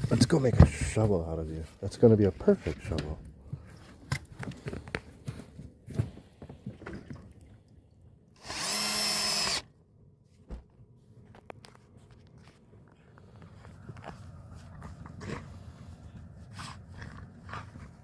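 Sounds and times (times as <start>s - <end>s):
power drill whine: 8.4s - 9.7s.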